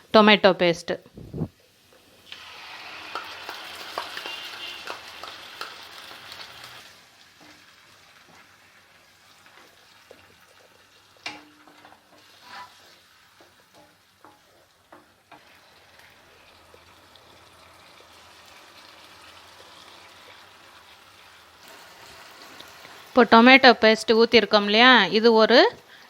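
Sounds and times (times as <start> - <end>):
paste sizzling in hot oil: 1.6 - 23.2
spoon stirring and knocking pan: 3.1 - 6.1, 11.2 - 15.6.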